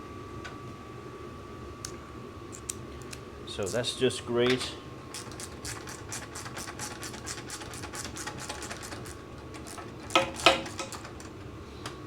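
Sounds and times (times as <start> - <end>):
rapid mechanical clicking: 5.1 - 12.0.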